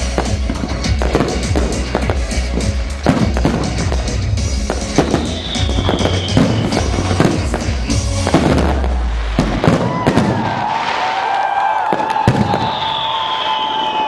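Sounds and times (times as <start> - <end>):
music playing: 0.0 - 9.8
fireworks bangs and crackling: 0.0 - 14.0.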